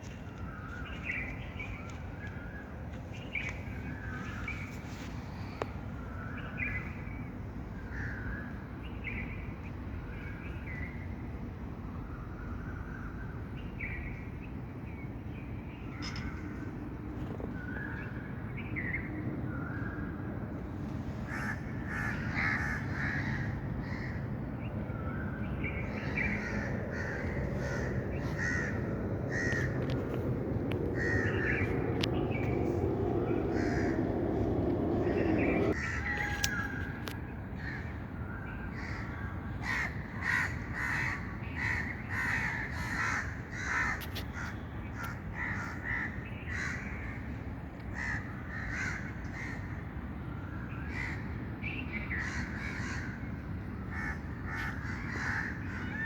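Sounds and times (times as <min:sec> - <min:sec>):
steady low background noise: 0:00.0 - 0:56.0
birds calling harshly: 0:21.3 - 0:24.2, 0:25.3 - 0:37.9, 0:38.7 - 0:47.2, 0:53.9 - 0:56.0.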